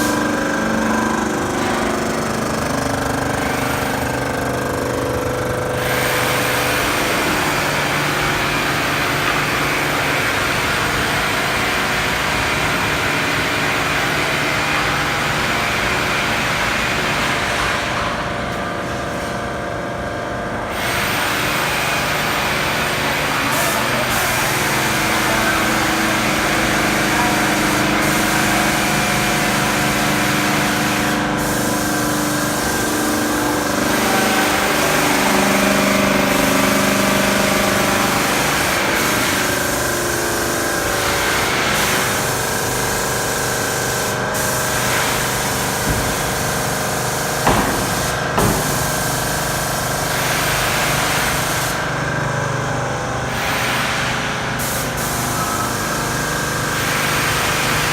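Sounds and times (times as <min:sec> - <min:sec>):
paint sprayer motor hum: 0:00.0 - 0:09.3, 0:23.6 - 0:52.8.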